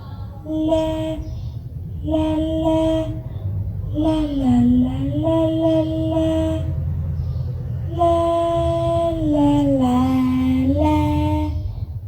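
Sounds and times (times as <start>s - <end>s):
steady low rumble: 0.0s - 12.0s
high voice singing held notes: 0.4s - 1.4s, 2.0s - 3.3s, 3.9s - 6.8s, 7.9s - 11.7s.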